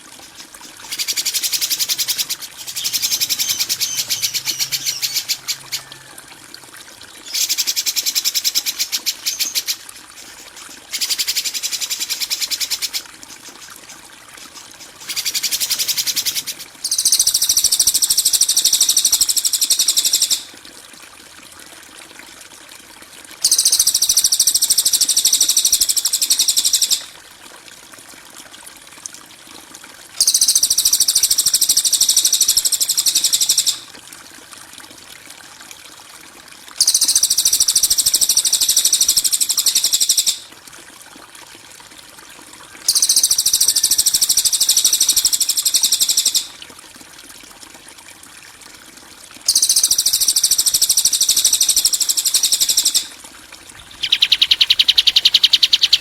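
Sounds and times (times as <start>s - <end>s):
harsh buzzing bird call: 53.8s - 56.0s.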